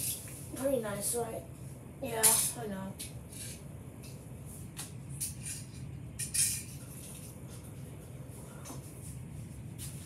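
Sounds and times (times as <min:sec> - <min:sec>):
steady low hum: 0:00.0 - 0:10.0
toy cars clicking and scraping: 0:05.2 - 0:07.2.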